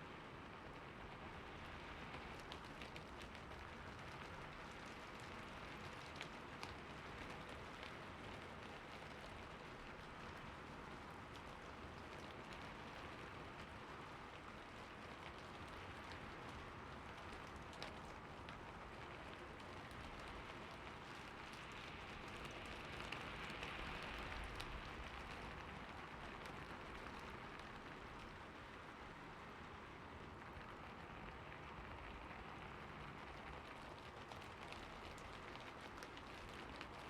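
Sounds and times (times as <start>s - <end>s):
steady rain hiss: 0.0s - 37.0s
raindrop ticks: 1.6s - 37.0s.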